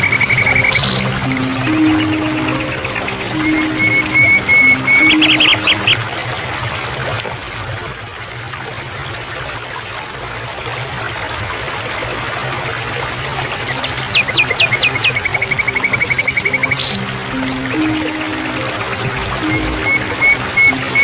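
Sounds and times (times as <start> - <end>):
bird chirps: 0.0 - 6.0, 13.7 - 21.0
stream water running: 0.0 - 21.0.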